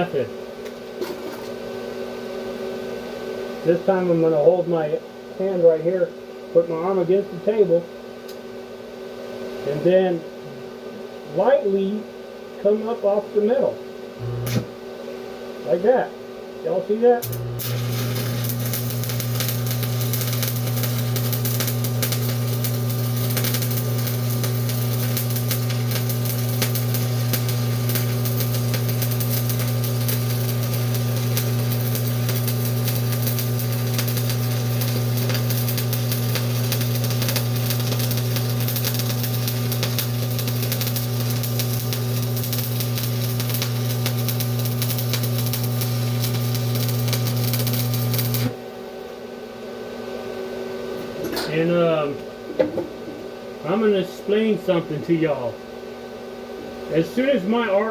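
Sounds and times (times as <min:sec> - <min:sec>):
low hum: 0:14.2 - 0:14.8
welding arc crackling and hissing: 0:14.2 - 0:14.8, 0:17.2 - 0:48.6.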